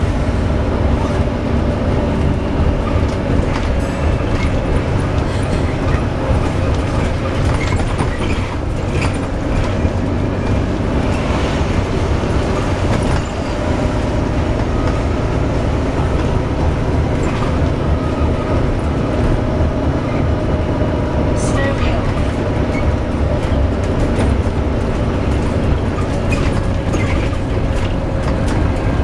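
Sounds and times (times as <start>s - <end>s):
bus rumbling: 0.0s - 29.0s
constant drone: 0.0s - 29.0s.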